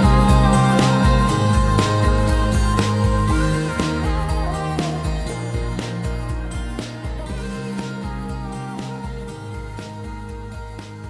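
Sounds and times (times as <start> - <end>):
gentle music with plucked guitar: 0.0 - 11.0.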